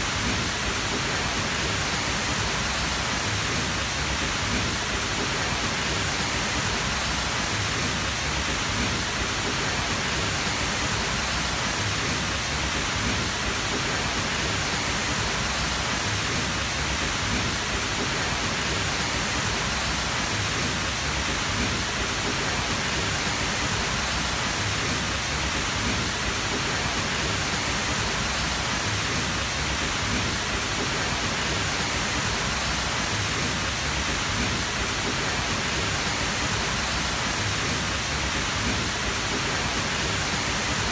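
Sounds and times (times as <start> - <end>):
waterfall rushing and crashing: 0.0 - 40.9.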